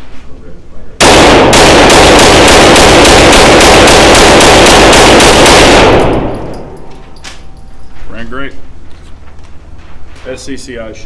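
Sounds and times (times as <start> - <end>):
pistol rapid fire: 1.0 - 6.8.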